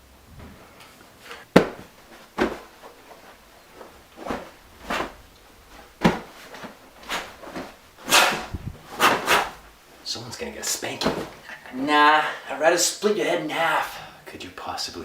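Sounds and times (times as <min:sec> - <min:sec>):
sharp knocks: 0:01.5 - 0:05.1.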